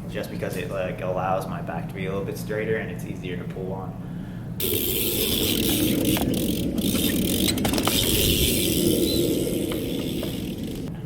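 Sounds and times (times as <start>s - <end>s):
bike hub freewheeling buzz: 4.6s - 11.0s.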